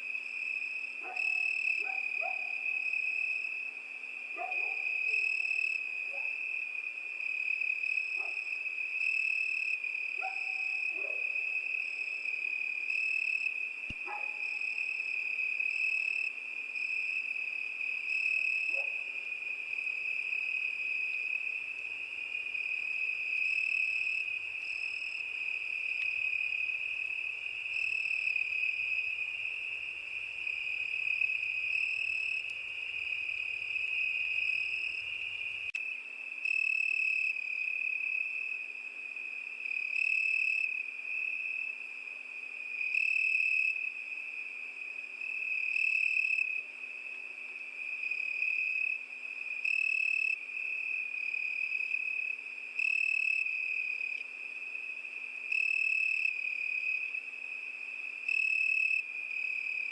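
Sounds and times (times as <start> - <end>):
cricket steady high trill: 19.8 - 38.7.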